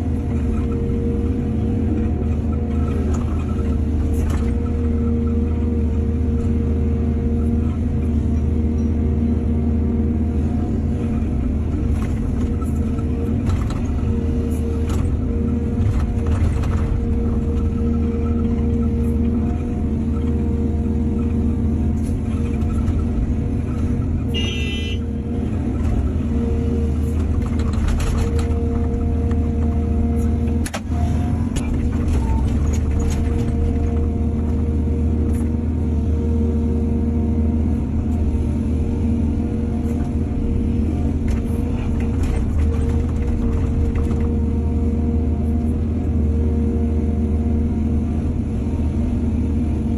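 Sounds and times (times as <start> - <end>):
excavator diesel engine running: 0.0 - 49.9.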